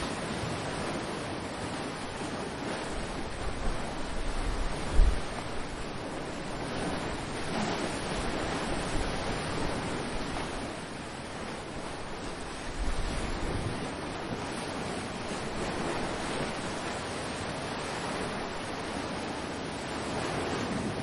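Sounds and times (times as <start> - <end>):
ocean surf washing on shore: 0.0 - 21.0
wind buffeting microphone: 0.0 - 21.0.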